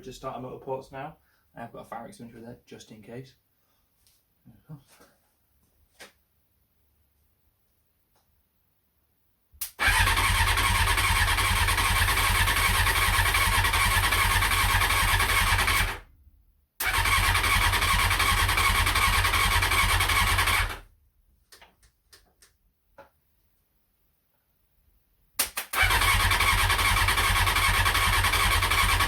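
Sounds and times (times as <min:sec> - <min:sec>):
motorcycle starter motor cranking: 0:09.7 - 0:16.0, 0:16.8 - 0:20.8, 0:25.8 - 0:29.0.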